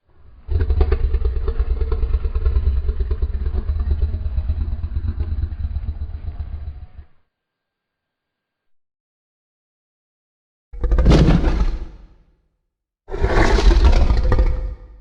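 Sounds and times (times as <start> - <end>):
deep rough creature growl-roar: 0.0 - 7.1, 10.8 - 12.2, 13.1 - 15.0.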